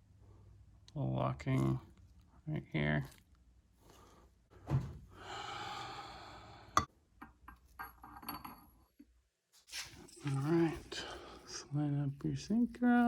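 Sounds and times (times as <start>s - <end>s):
breathy exhale: 5.1s - 6.8s.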